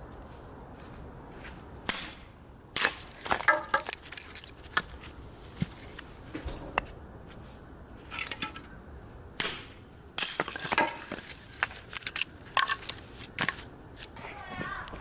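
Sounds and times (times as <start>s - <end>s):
firewood and metal knocking: 6.3s - 7.4s.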